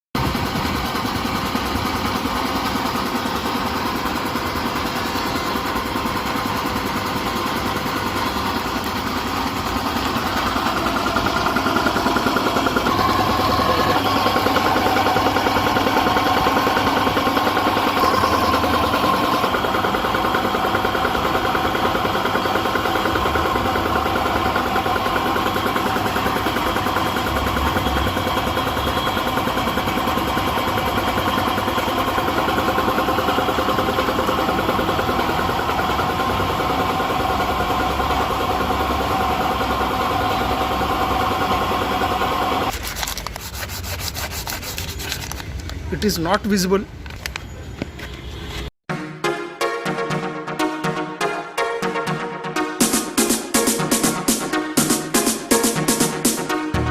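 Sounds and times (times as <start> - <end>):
steady whine: 0.2 - 42.7
air compressor running: 0.2 - 47.4, 52.2 - 56.9.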